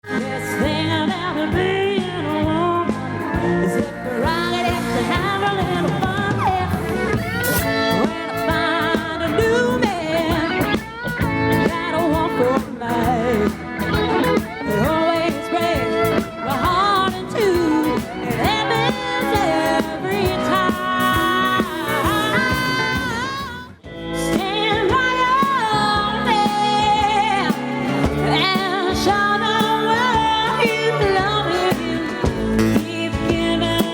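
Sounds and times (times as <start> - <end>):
singing over instruments: 25.1 - 33.9.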